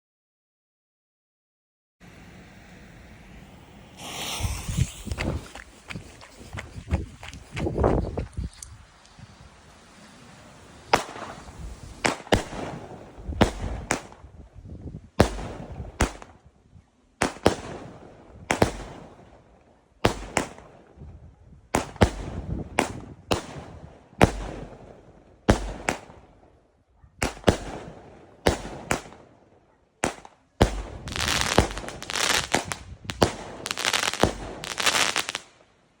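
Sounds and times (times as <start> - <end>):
hissing firework tails: 2.0 - 16.4, 30.1 - 35.6
fireworks cake firing: 2.5 - 7.5, 9.0 - 14.4, 17.2 - 19.4, 21.7 - 26.3, 27.2 - 29.3, 30.0 - 35.6.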